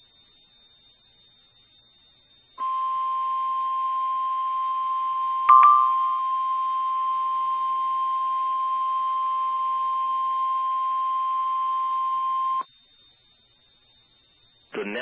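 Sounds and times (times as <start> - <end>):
steady electronic alarm tone: 5.5 - 7.3.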